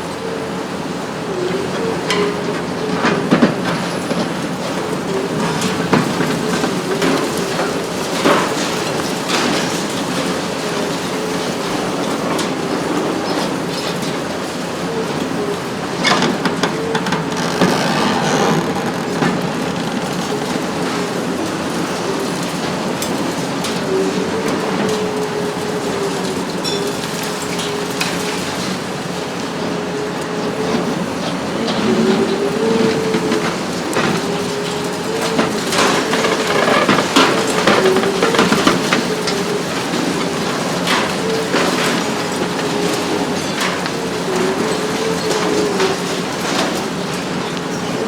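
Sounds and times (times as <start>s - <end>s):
excavator engine and hydraulics whine: 0.0s - 48.0s
concrete and debris cracking: 16.1s - 21.7s.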